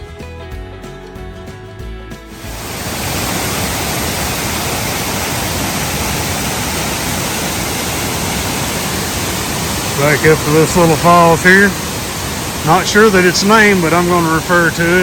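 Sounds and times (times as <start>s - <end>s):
background music: 0.0s - 2.6s
waterfall rushing: 2.3s - 15.0s.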